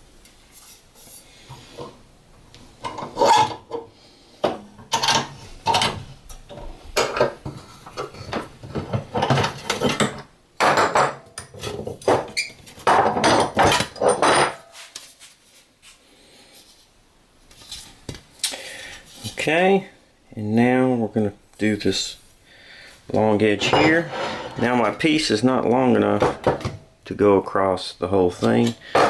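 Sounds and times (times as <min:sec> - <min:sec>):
sheet metal clattering and scraping: 0:02.8 - 0:03.9, 0:04.5 - 0:14.8, 0:23.4 - 0:25.0.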